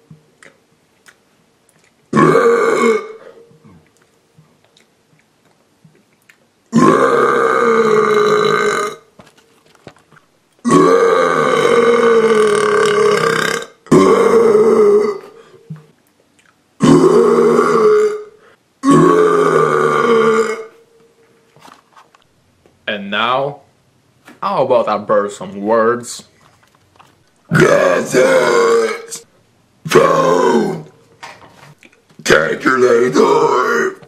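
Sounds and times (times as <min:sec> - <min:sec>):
person burping loudly: 0:02.1 - 0:03.8, 0:06.7 - 0:09.1, 0:10.6 - 0:15.8, 0:16.8 - 0:20.8, 0:27.5 - 0:29.3, 0:29.9 - 0:31.0, 0:32.6 - 0:34.0.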